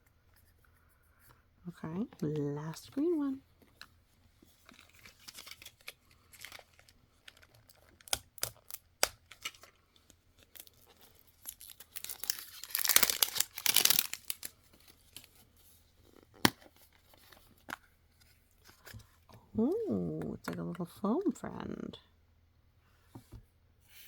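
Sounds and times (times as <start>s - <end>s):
plastic wrapper tearing and crinkling: 4.6s - 15.4s.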